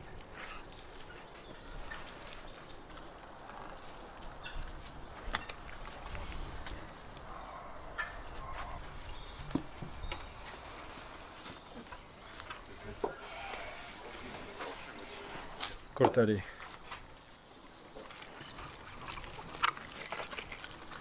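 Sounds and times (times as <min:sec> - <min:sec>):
high-pitched insect chorus: 0:02.9 - 0:18.1.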